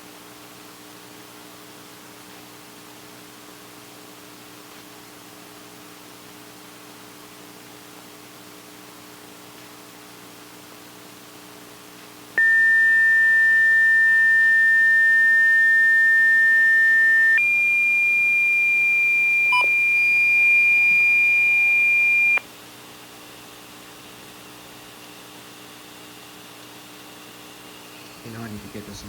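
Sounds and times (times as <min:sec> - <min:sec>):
faint hum of dead air: 0:00.0 - 0:29.0
loud electronic beep tones: 0:12.4 - 0:22.4.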